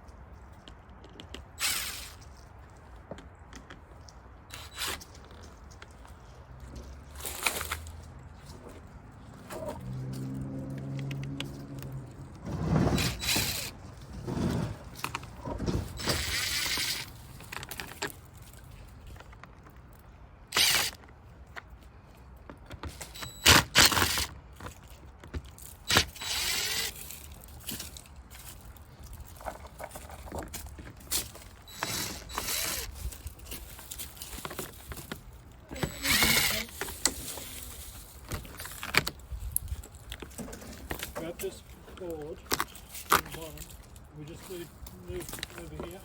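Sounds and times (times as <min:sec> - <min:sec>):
tools scraping wood: 0:09.4 - 0:18.2, 0:29.4 - 0:39.2.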